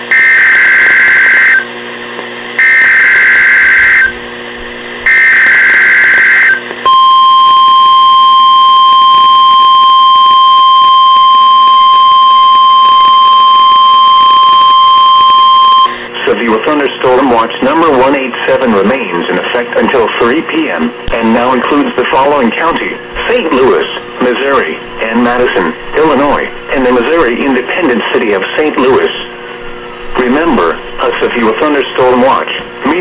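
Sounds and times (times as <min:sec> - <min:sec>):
steady warning alarm tone: 0:00.0 - 0:01.7, 0:02.6 - 0:04.2, 0:05.0 - 0:16.1
buzzy digital header bursts: 0:00.1 - 0:01.6, 0:02.6 - 0:04.2, 0:05.1 - 0:16.0.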